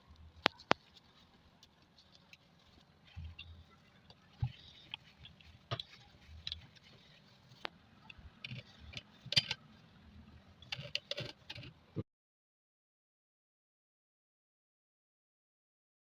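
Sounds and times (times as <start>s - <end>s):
sewing machine parts clicking: 10.6s - 11.8s.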